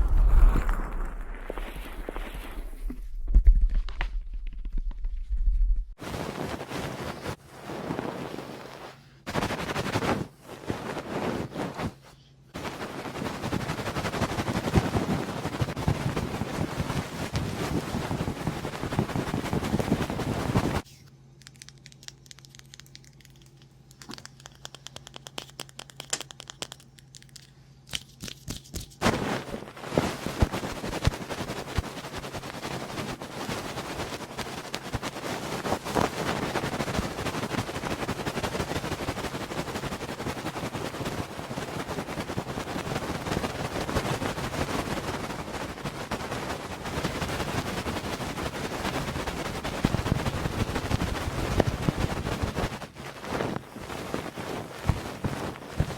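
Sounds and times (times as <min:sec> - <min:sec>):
low hum: 0:00.0 - 0:06.0
crackling and scratching: 0:00.0 - 0:12.0, 0:12.6 - 0:20.9, 0:21.5 - 0:55.9
rubbing on microphone: 0:00.0 - 0:20.9, 0:28.5 - 0:55.9.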